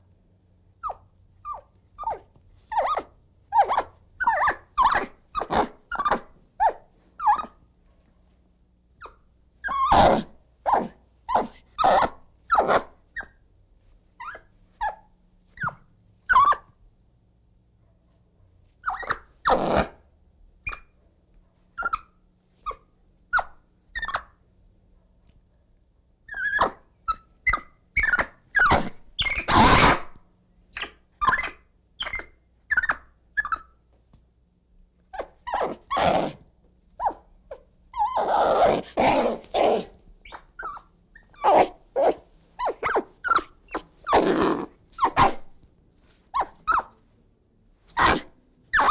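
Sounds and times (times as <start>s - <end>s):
monkey crying: 0.8s - 7.6s, 9.7s - 12.9s, 27.5s - 30.1s, 30.8s - 33.7s, 35.2s - 36.4s, 38.0s - 45.5s, 46.4s - 46.9s, 48.0s - 48.9s
monkey screeches: 0.8s - 7.6s, 9.6s - 13.3s, 15.6s - 16.7s, 18.8s - 20.0s, 22.7s - 24.3s, 26.3s - 33.7s, 35.2s - 36.4s, 38.0s - 45.5s, 46.4s - 47.0s, 47.9s - 48.9s.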